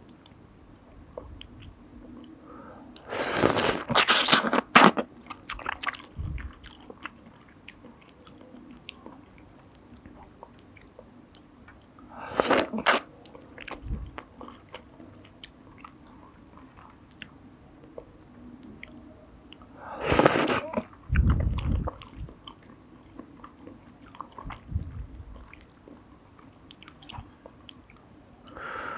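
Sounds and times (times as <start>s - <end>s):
noodle slurp: 3.0s - 6.4s, 12.3s - 13.1s, 20.0s - 21.9s
chewing noodles: 3.0s - 19.0s, 19.6s - 28.1s.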